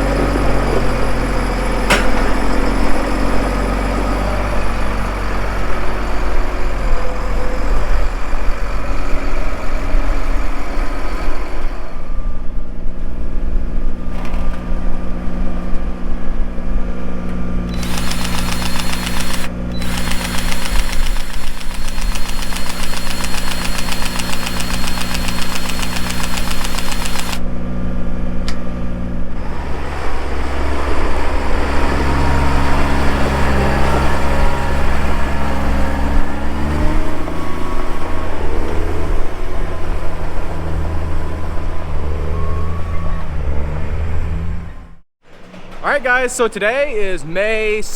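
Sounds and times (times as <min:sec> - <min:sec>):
tractor diesel engine running: 0:17.7 - 0:27.4.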